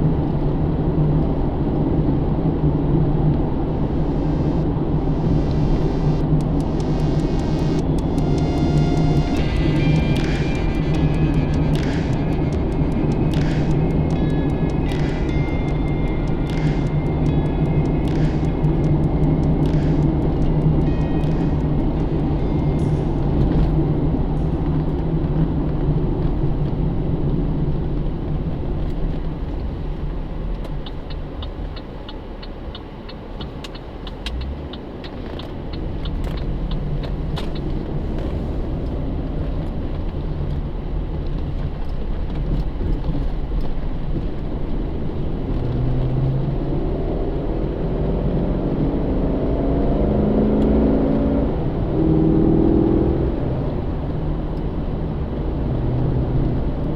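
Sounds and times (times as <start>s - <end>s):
car engine cruising: 0.0s - 56.9s
tyre and road noise: 0.0s - 56.9s
light rapid ticking: 3.8s - 23.8s.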